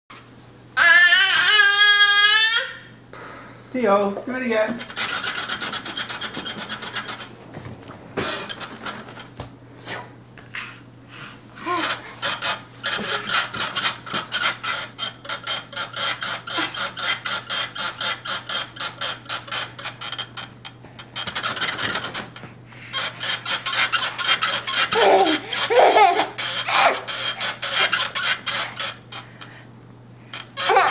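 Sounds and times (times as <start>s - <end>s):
baby scraping playpen: 4.3s - 10.8s, 11.6s - 29.4s, 30.3s - 30.9s
baby laughing: 12.9s - 13.5s, 24.7s - 27.9s, 30.6s - 30.9s.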